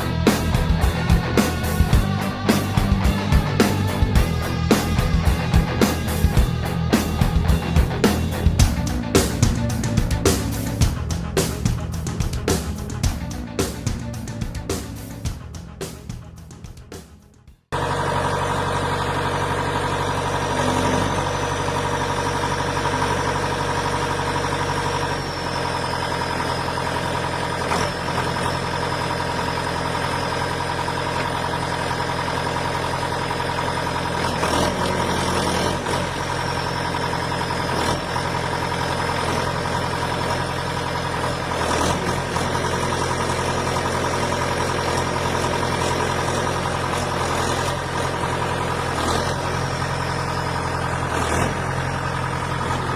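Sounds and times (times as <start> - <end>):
high whine: 0.0 - 12.2
heavy machine engine running: 0.0 - 52.9.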